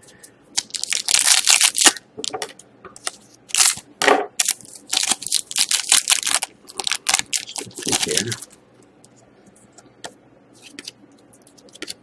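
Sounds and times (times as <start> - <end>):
card wrappers crinkling: 0.6 - 2.0, 3.0 - 3.8, 4.4 - 8.6.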